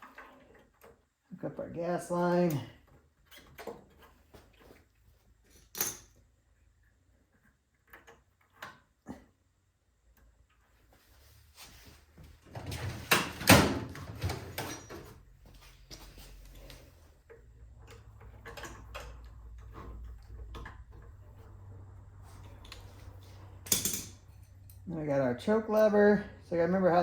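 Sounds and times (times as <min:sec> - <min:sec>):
clicks and knocks of metal tools: 0:05.4 - 0:06.2, 0:22.4 - 0:24.9.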